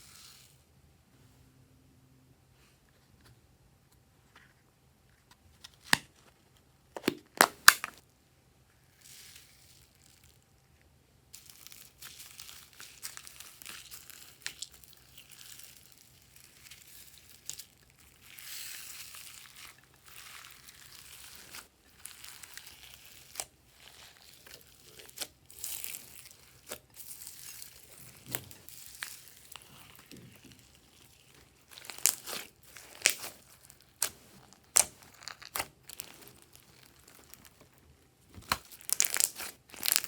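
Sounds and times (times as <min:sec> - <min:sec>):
slime crackling and crinkling: 0:08.9 - 0:10.4, 0:11.3 - 0:40.0
slime popping: 0:18.4 - 0:37.6, 0:38.3 - 0:40.0.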